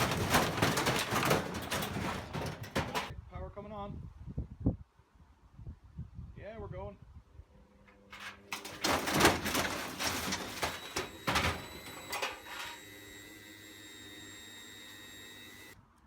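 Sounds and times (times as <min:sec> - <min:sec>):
washing machine rattling and scraping: 0:00.0 - 0:03.1, 0:08.1 - 0:12.8
motor hum with thin whine: 0:12.5 - 0:15.8.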